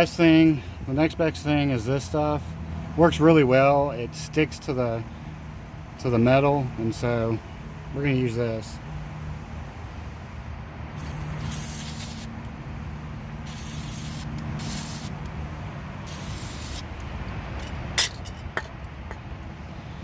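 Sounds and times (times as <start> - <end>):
aerosol spray hissing: 10.9 - 12.4, 13.4 - 15.2, 16.0 - 16.9.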